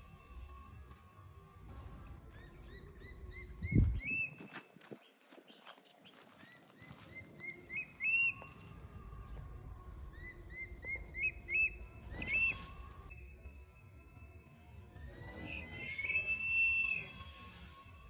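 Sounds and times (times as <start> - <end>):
bird calling shrill notes: 6.1 - 8.8, 10.1 - 13.4.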